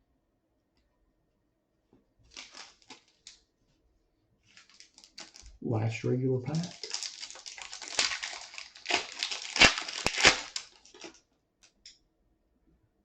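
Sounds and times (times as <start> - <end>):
wrapper being torn and crinkled: 2.3 - 3.4, 4.5 - 5.6, 6.5 - 11.2.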